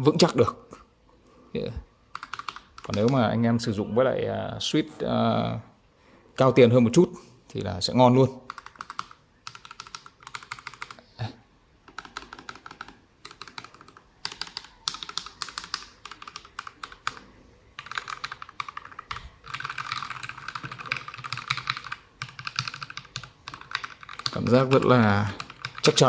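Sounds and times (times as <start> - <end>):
mechanical keyboard typing: 2.1 - 3.2, 8.5 - 11.0, 11.8 - 26.0.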